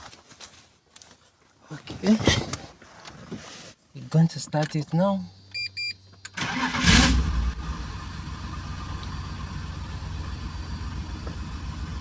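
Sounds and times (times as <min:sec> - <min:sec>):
car engine starting and idling: 0:06.2 - 0:12.0.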